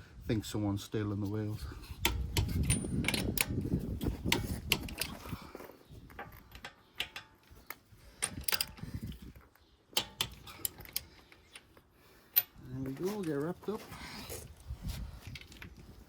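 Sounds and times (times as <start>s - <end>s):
tools and metal parts clicking: 2.0s - 5.4s, 6.0s - 12.6s.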